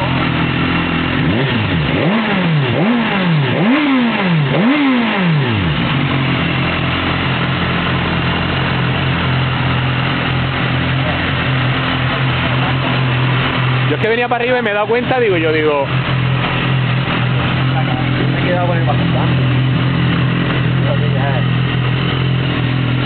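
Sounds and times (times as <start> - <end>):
motorcycle engine revving and idling: 0.0 - 23.0.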